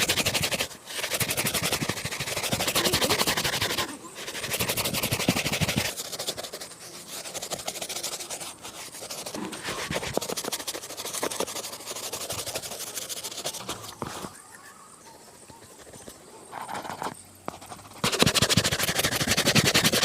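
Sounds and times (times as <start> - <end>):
rubbing strokes on a shoe: 0.0 - 14.5, 15.3 - 20.0.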